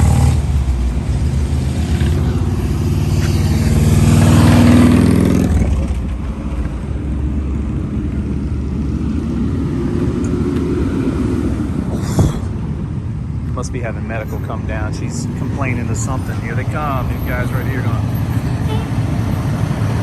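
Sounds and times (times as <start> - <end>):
car accelerating past: 0.0 - 7.5
traffic rumble: 0.0 - 20.0.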